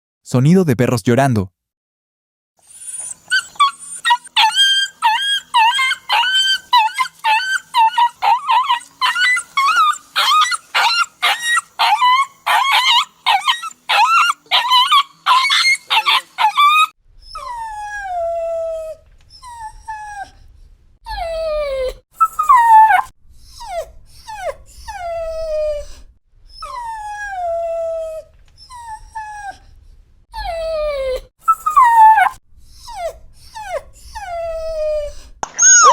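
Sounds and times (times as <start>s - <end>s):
dog whimpering: 2.6s - 20.4s, 21.1s - 29.7s, 30.4s - 35.9s
dog yelping: 2.7s - 20.3s, 21.1s - 26.0s, 30.4s - 35.9s.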